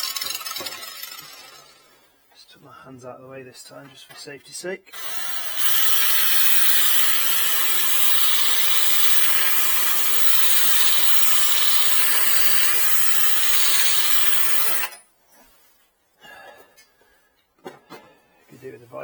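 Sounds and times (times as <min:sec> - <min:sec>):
angle grinder cutting steel: 0:00.0 - 0:01.9, 0:04.9 - 0:15.0.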